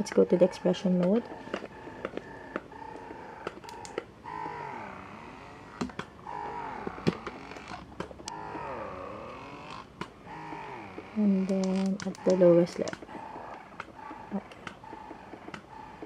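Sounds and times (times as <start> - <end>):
sharp clicks: 0.0 - 4.6, 9.6 - 16.0
breast pump motor cycling: 0.0 - 16.0.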